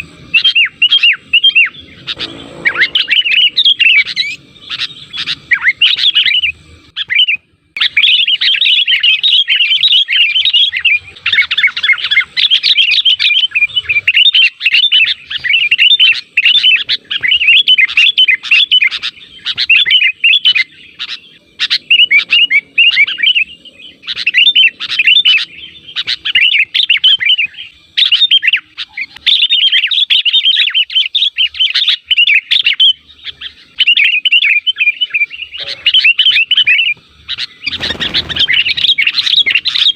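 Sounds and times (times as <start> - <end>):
bulbul song: 0.0 - 39.9.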